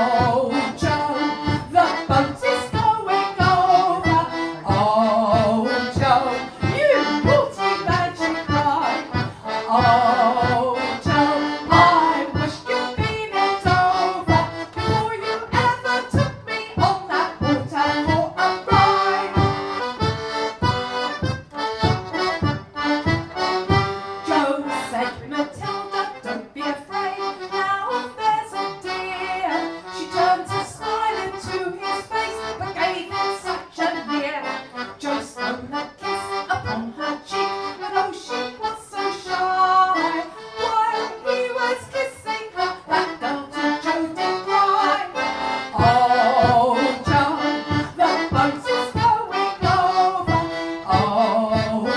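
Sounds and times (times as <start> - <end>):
melodeon playing polka: 0.0 - 35.1.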